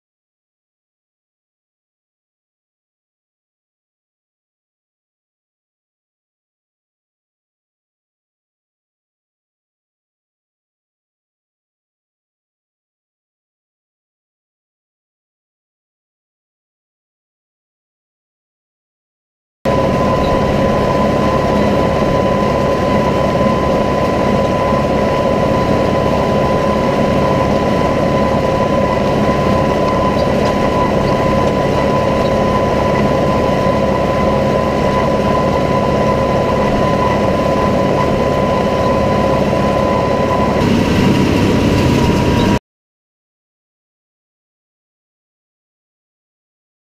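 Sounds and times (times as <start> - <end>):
high whine: 19.7 - 42.6
tractor engine running: 19.7 - 42.6.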